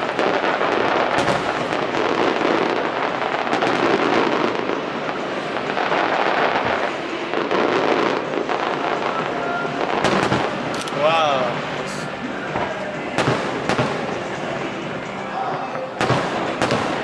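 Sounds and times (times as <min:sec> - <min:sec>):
fireworks crackling: 0:00.0 - 0:17.0.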